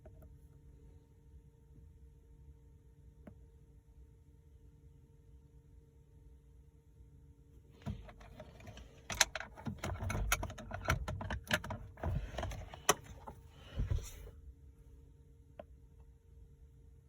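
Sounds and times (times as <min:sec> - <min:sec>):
objects clicking and rattling: 0:07.8 - 0:14.0.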